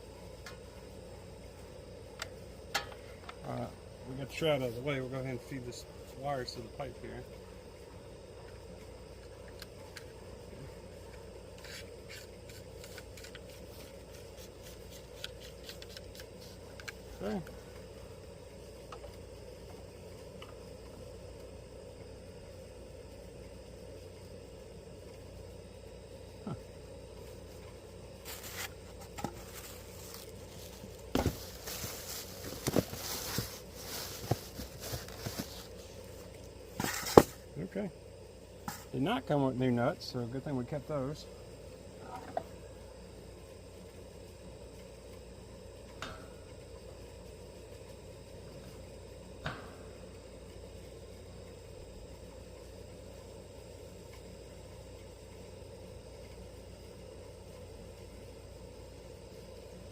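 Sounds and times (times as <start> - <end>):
steady low hum: 0.0 - 59.9
wires scraping in a pipe: 11.6 - 16.7
rustling: 28.2 - 37.4.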